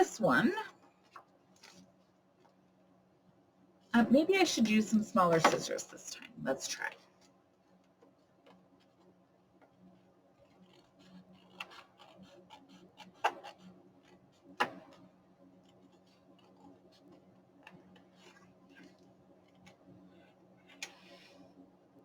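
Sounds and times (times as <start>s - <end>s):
scissors snipping paper: 10.6s - 13.6s.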